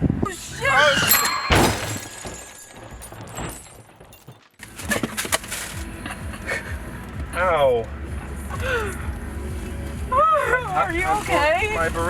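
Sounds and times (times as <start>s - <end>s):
car crash shattering: 0.2s - 6.0s.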